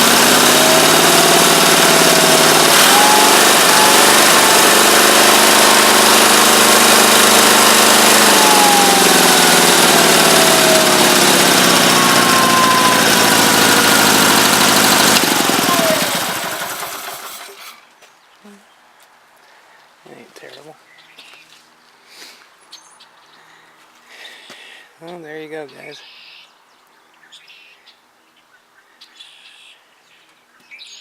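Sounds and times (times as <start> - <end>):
garden tractor engine running: 0.0 - 17.8.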